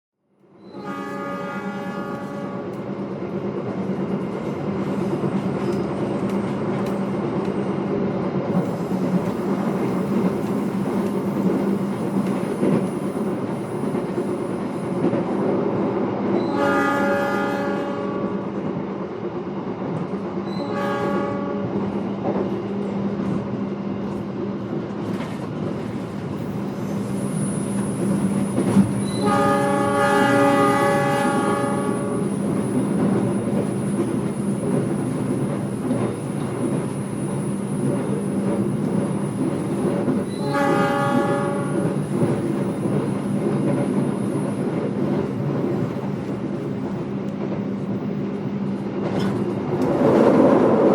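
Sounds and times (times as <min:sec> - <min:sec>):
train carriage rumble: 0:00.3 - 0:50.9
horn-like tone: 0:00.6 - 0:02.7, 0:16.4 - 0:18.3, 0:20.6 - 0:21.7, 0:29.1 - 0:32.3, 0:40.3 - 0:41.8.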